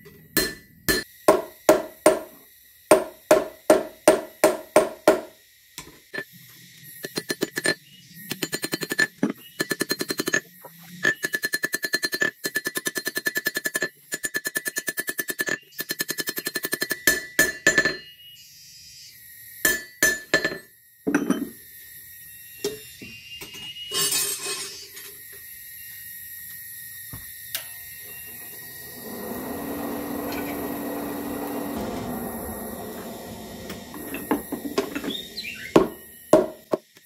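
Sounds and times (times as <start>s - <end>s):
rapid hammering on steel: 0.4s - 5.3s
motor humming: 27.9s - 36.8s.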